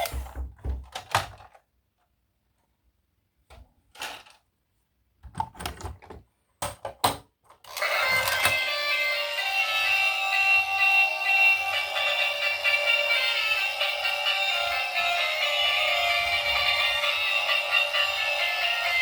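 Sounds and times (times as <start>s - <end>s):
plastic toys clicking and knocking: 0.8s - 1.7s, 5.3s - 8.8s
toy electronic sound effects and tune: 7.7s - 19.0s.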